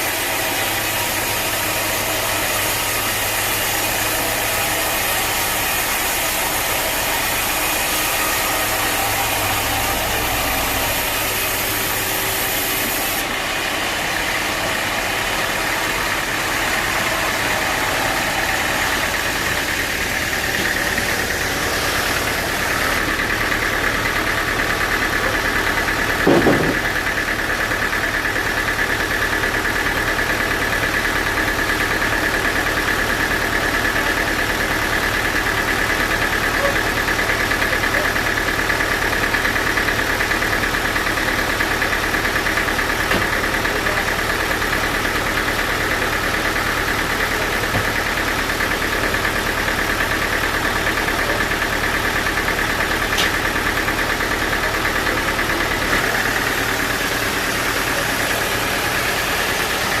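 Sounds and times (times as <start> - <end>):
high mechanical whine: 0.0 - 27.1
sawmill machinery hum: 0.0 - 60.0.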